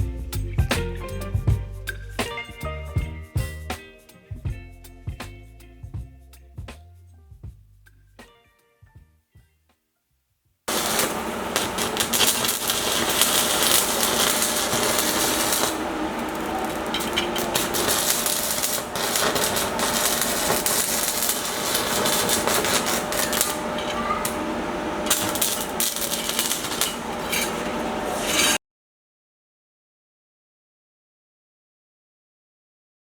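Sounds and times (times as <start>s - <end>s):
metalwork crackling and clicking: 10.7s - 28.6s.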